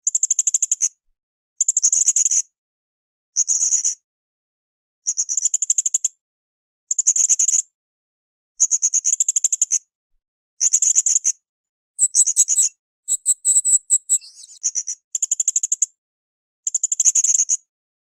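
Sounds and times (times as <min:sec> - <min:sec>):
parrot chattering trills: 0:12.0 - 0:14.6.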